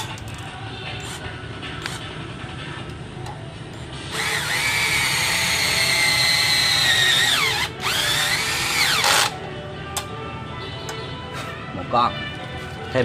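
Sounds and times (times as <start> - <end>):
cordless drill whining: 4.1 - 9.3.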